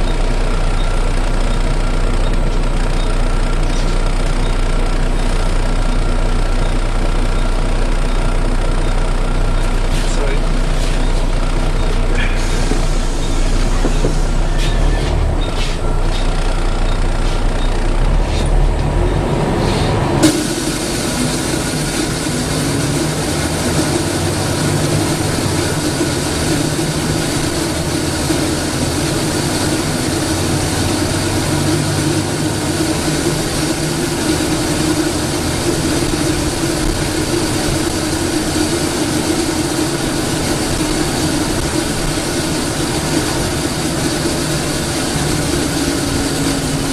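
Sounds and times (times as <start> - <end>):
bus diesel engine running: 0.0 - 46.9
rushing suction noise: 18.2 - 46.9.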